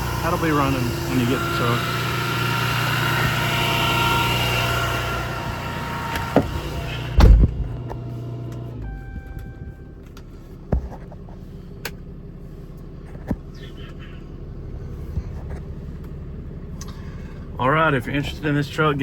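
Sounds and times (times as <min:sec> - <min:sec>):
engine idling: 0:00.0 - 0:19.0
heavy thump: 0:06.2 - 0:07.9
short steady tone: 0:08.7 - 0:10.1.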